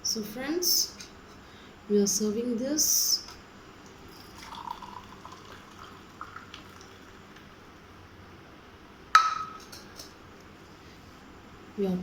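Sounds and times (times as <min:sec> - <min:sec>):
faint kitchen background: 0:00.0 - 0:12.0.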